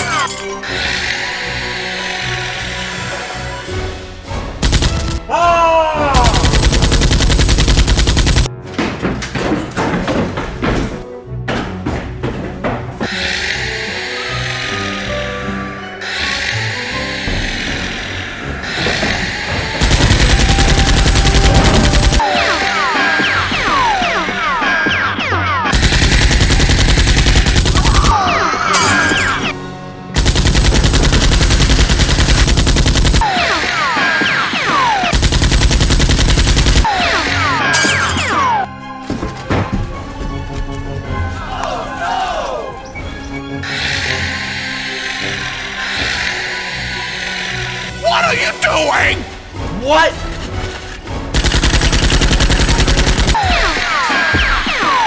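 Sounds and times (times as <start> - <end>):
background music: 0.0 - 55.0
machine-gun fire: 6.2 - 8.5, 19.8 - 22.3, 25.7 - 28.0, 30.2 - 33.2, 35.1 - 36.9, 51.3 - 54.7
automatic gunfire: 6.3 - 8.5, 30.2 - 33.2, 51.3 - 53.6.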